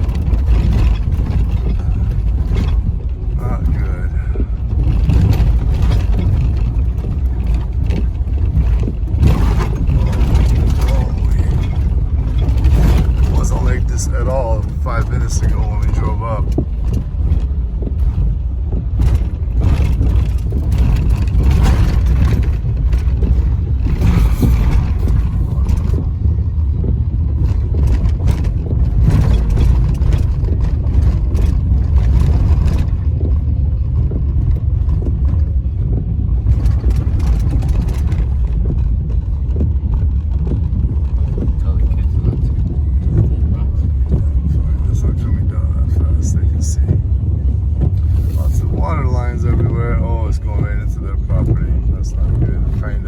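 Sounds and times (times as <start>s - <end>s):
heavy low rumble: 0.0s - 53.0s
floodwater rushing over road: 40.8s - 53.0s.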